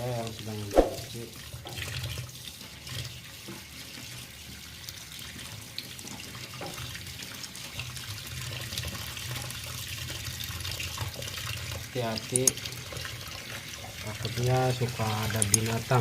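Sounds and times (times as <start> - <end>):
water running: 0.0 - 16.0
small water splashes: 0.2 - 1.4.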